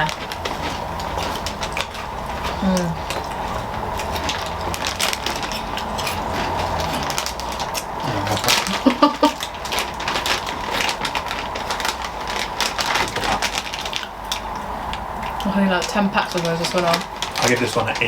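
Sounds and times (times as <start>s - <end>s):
snacks being crunched: 0.0s - 18.0s
person humming: 2.5s - 3.9s, 8.0s - 9.4s.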